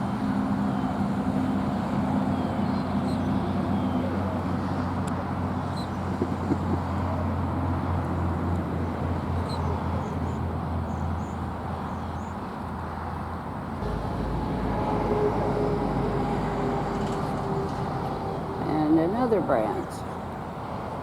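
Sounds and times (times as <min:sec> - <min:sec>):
distant road traffic rumble: 0:00.0 - 0:21.0.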